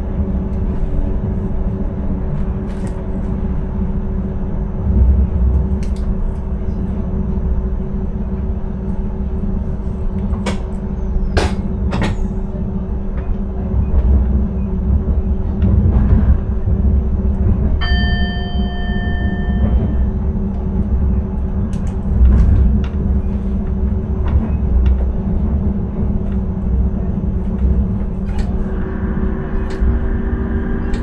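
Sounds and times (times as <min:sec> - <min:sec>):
train wheels rumbling on rail: 0:00.0 - 0:31.0
clear ringing tone: 0:17.8 - 0:20.2.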